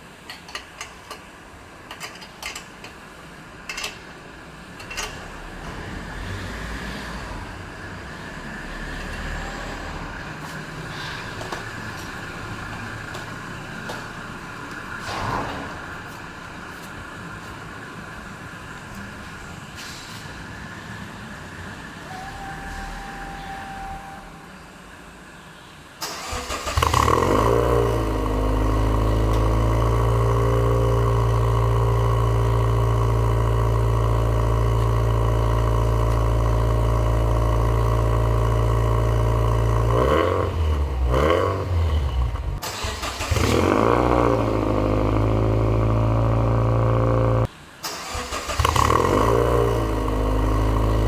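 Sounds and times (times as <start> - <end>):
car engine starting and idling: 0.0 - 51.0
car engine revving: 26.0 - 51.0.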